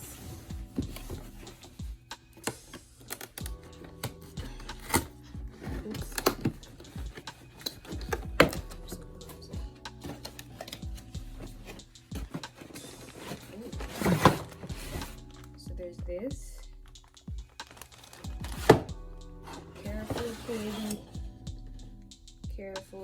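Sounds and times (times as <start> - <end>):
background music: 0.0 - 23.0
cardboard box being opened: 2.5 - 15.2, 19.5 - 21.1.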